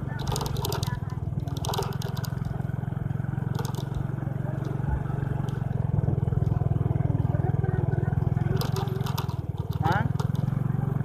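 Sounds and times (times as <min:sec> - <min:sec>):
clicks and rattles: 0:00.0 - 0:02.7, 0:03.4 - 0:05.8, 0:08.3 - 0:10.6
small engine running: 0:00.0 - 0:11.0.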